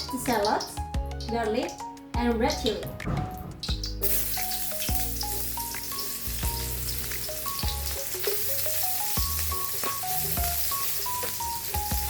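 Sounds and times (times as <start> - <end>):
food sizzling in hot oil: 3.4 - 12.0.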